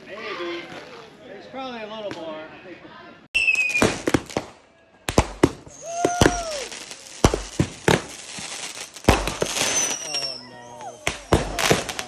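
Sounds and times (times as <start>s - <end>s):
fireworks whistling: 3.4s - 4.4s, 5.2s - 12.0s
fireworks bangs: 3.4s - 12.0s.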